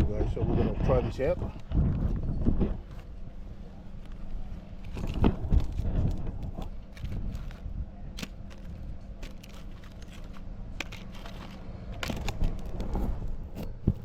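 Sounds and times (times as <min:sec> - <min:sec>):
low rumble of wind on microphone: 0:00.0 - 0:14.0
paper rustling and crackling: 0:03.9 - 0:14.0.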